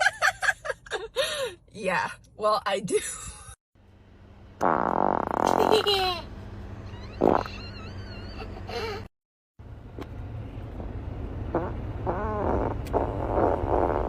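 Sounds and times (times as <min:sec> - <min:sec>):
short loud fart: 0:04.6 - 0:05.8, 0:07.2 - 0:07.6, 0:11.5 - 0:14.0
long squeaky fart: 0:04.6 - 0:05.9, 0:06.9 - 0:08.5, 0:11.5 - 0:14.0.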